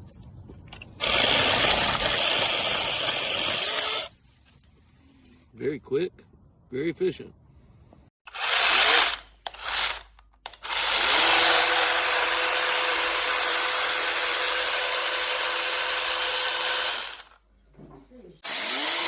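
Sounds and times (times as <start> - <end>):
mini chainsaw motor whining: 1.0 - 4.1, 8.3 - 17.4, 18.4 - 19.0.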